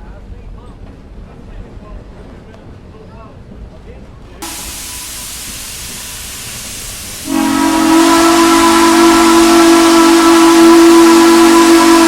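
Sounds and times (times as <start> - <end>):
hiss of steam: 4.4 - 12.0
steam locomotive whistle: 4.4 - 12.0.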